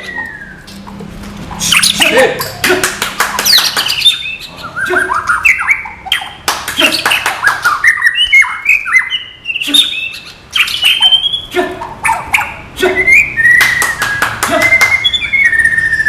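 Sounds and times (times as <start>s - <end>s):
bird singing whistled notes: 0.0s - 0.7s, 3.5s - 6.3s, 7.5s - 11.5s, 12.3s - 16.0s
sharp clicking chirps: 1.6s - 12.6s, 13.2s - 15.8s.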